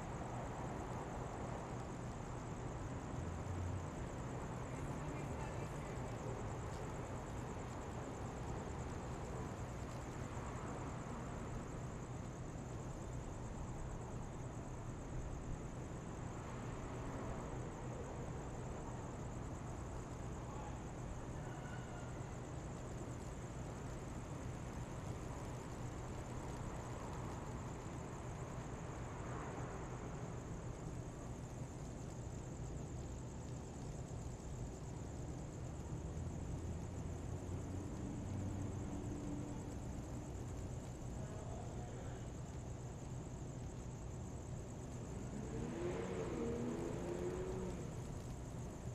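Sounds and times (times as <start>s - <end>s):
background hiss: 0.0s - 48.9s
distant traffic hum: 0.0s - 48.9s
vehicle passing faintly: 35.8s - 40.4s, 44.2s - 48.9s.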